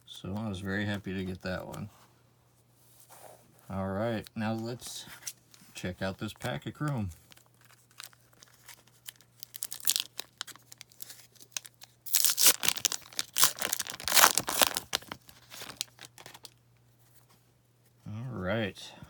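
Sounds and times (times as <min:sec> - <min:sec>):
foil wrapper tearing and crinkling: 0:07.2 - 0:16.6.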